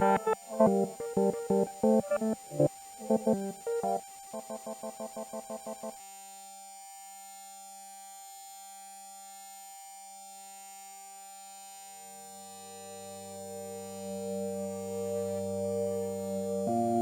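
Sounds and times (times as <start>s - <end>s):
deep synth tones: 0.0s - 5.9s
high sustained synth tone: 0.0s - 6.0s, 12.1s - 17.0s
pulsing synth beeps: 0.0s - 6.0s
faint low drone: 12.6s - 17.0s.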